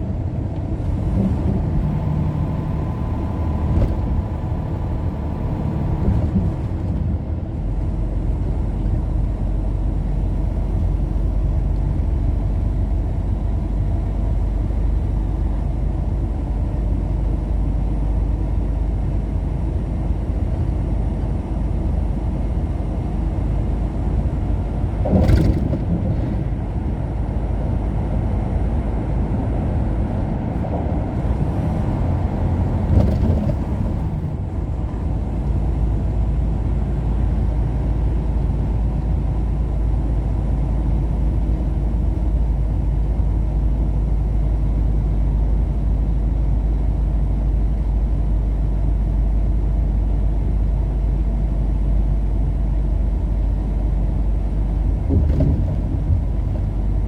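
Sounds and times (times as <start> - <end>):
car road and engine noise: 0.0 - 57.0.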